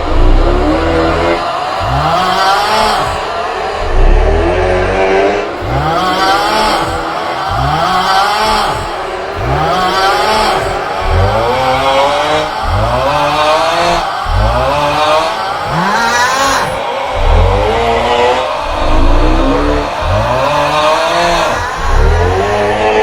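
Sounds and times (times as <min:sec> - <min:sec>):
man's groaning snore: 0:18.5 - 0:22.8.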